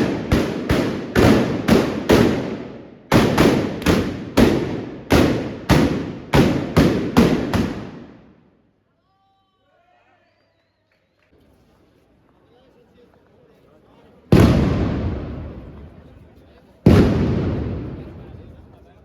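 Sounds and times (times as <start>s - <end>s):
blunderbuss shots echoing: 0.0s - 8.4s, 14.3s - 16.2s, 16.8s - 18.8s.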